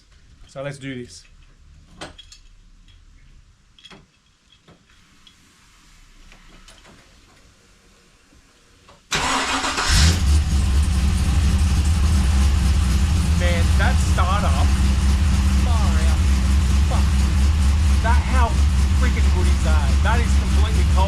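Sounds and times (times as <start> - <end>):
car engine starting and idling: 9.1 - 21.0.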